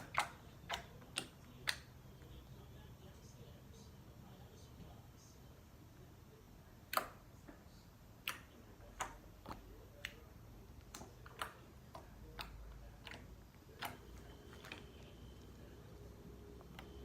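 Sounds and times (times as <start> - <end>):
slime clicking and popping: 6.8 - 7.3, 8.2 - 15.0.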